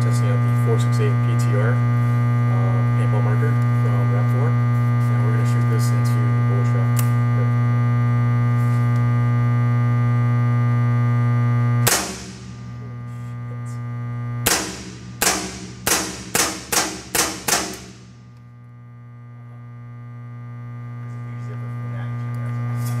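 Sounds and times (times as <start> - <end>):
electrical hum: 0.0 - 23.0
paintball marker shots: 11.9 - 12.5, 14.5 - 18.1.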